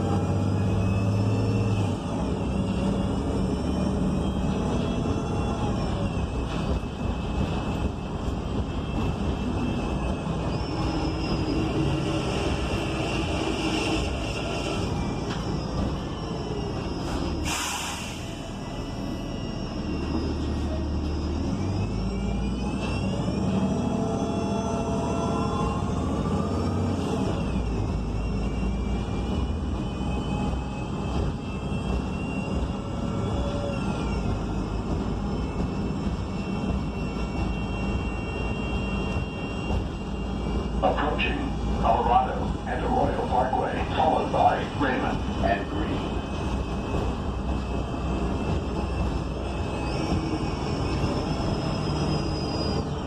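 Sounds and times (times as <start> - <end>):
bus engine and transmission whine: 0.0 - 53.0
air hiss: 17.4 - 18.4.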